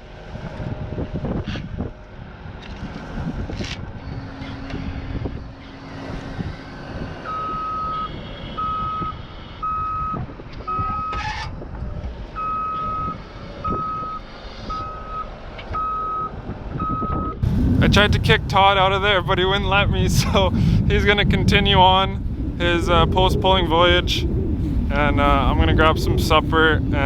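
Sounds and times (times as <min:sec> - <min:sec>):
backup alarm beeping: 0:07.3 - 0:11.2.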